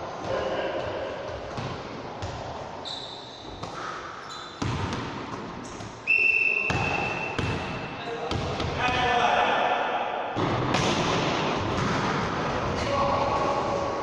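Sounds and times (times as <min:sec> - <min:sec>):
ball bouncing on hall floor: 0:00.2 - 0:02.7, 0:04.5 - 0:06.0, 0:06.6 - 0:09.2, 0:10.4 - 0:13.8.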